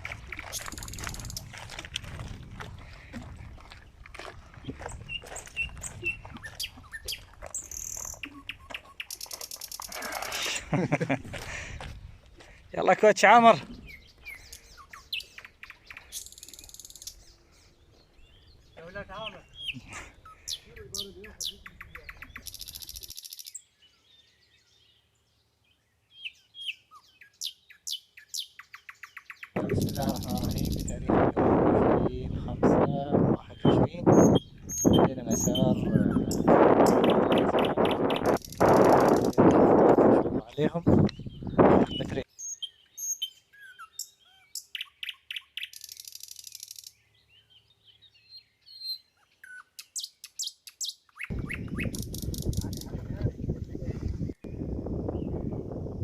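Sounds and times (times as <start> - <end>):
small birds chirping: 3.8 - 10.8, 12.4 - 31.1, 32.9 - 55.8
buzzy bird trill: 18.8 - 23.6, 33.6 - 39.4, 48.7 - 52.9
downward sweeping bird calls: 33.3 - 39.7, 41.1 - 52.6
high-pitched bird trill: 34.1 - 39.4.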